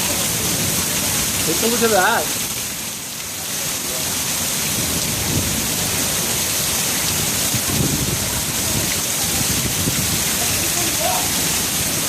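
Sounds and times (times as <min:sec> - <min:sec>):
heavy rain pouring: 0:00.0 - 0:12.0.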